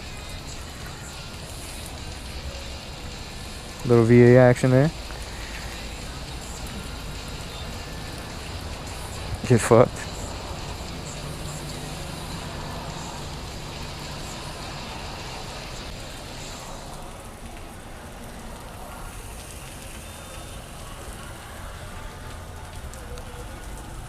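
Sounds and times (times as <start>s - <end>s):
motorcycle engine droning: 0.0s - 18.0s.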